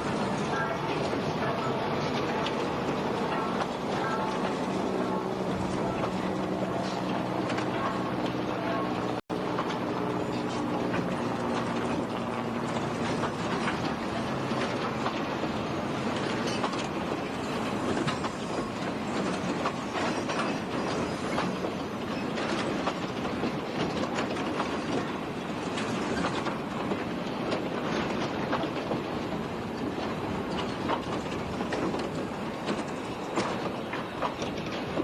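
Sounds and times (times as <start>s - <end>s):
train wheels clicking over rail joints: 9.5s - 35.0s.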